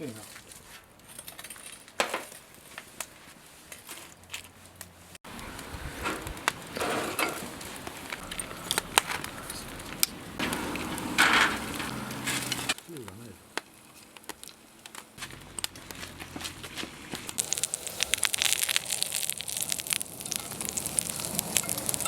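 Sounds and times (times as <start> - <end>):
campfire crackling and popping: 4.8 - 22.0
fire hissing: 5.2 - 22.0.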